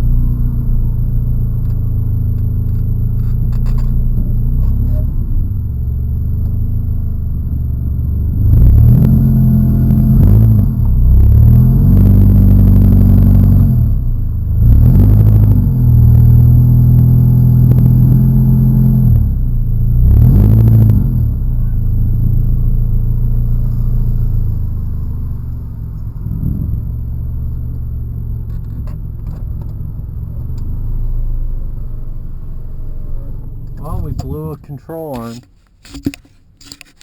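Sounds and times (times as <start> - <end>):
car engine revving: 7.4 - 35.4.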